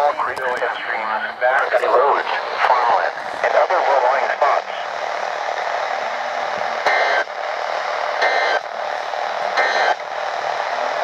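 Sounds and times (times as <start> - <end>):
radio static hiss: 0.0 - 11.0
two-pitch data tone bursts: 6.8 - 7.3, 8.2 - 8.7, 9.6 - 10.0.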